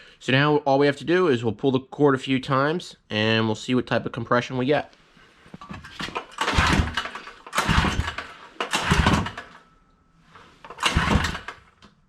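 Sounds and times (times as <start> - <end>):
recoil starter cord pulled: 5.6 - 9.6, 10.6 - 12.0
engine turning over: 5.8 - 9.7, 10.4 - 11.8.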